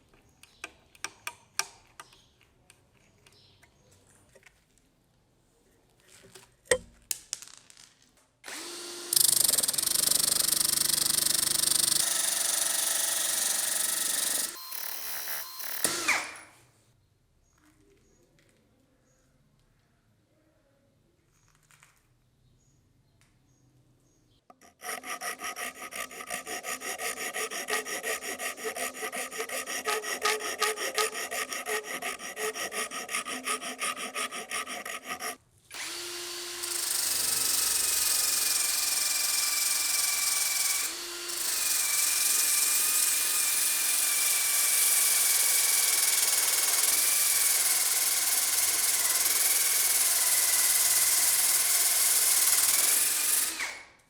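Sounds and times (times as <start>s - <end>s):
power tool whining: 8.5s - 16.6s, 24.8s - 53.9s
rhythmic filing on metal blade: 9.2s - 14.6s, 24.6s - 36.0s, 36.8s - 53.6s.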